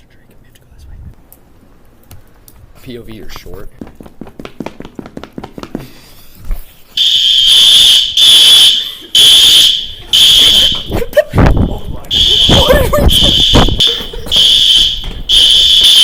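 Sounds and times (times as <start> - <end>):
fire alarm horn blasts: 7.0 - 16.0.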